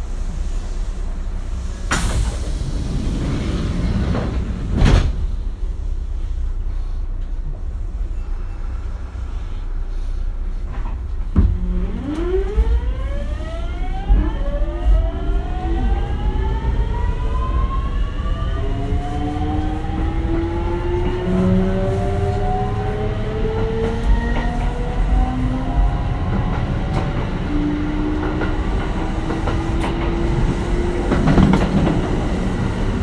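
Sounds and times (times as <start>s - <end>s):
electric train low rumble: 0.0s - 33.0s
sharp clunk: 1.8s - 2.7s.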